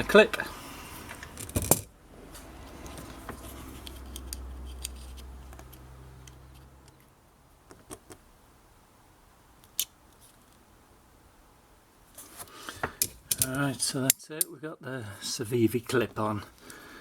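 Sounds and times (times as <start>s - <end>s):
small metal clicks and taps: 13.0s - 14.5s.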